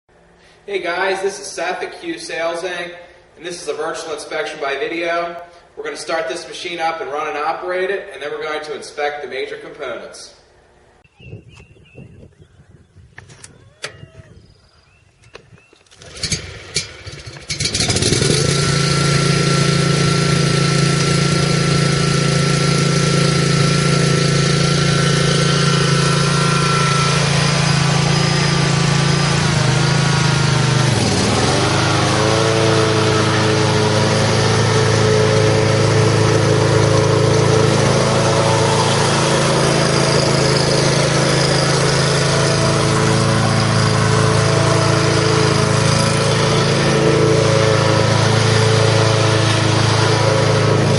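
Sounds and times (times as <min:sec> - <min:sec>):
lawn mower engine running: 0:15.8 - 0:50.9.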